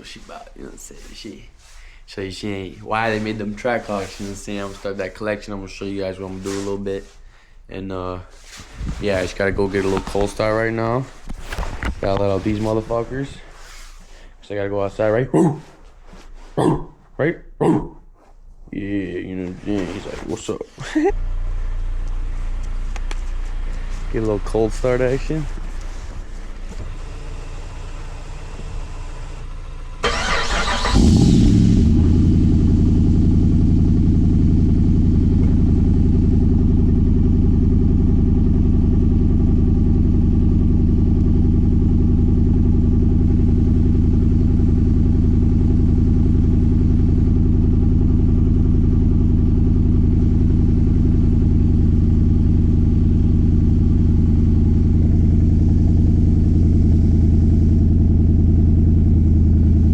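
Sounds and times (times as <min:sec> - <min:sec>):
car engine firing and idling: 0:21.2 - 0:59.9
starter motor cranking: 0:30.0 - 0:32.0.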